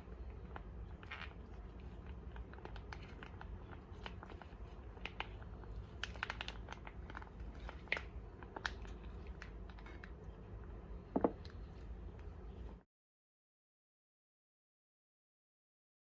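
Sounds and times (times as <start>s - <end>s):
bread being bitten and chewed: 0.0s - 10.5s.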